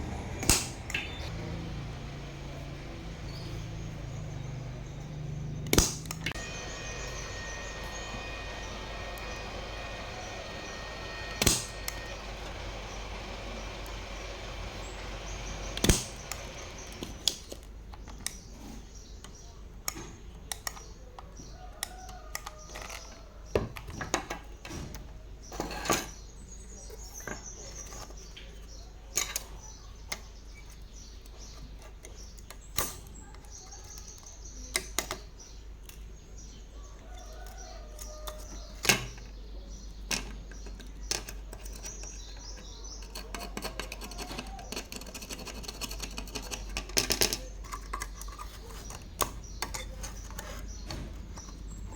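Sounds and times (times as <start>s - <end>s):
steady hum: 0.0s - 17.3s
small tools clicking and clinking: 40.0s - 51.7s.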